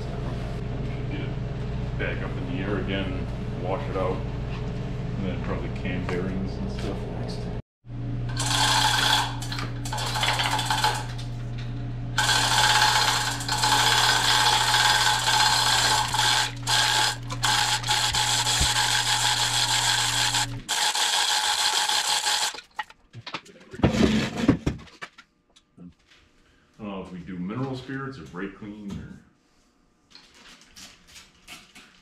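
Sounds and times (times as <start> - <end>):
electric motor hum: 0.0 - 22.6.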